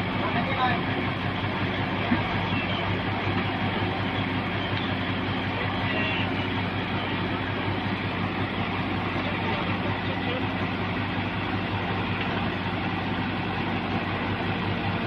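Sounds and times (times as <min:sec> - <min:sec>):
diesel engine rumbling: 0:00.0 - 0:15.0.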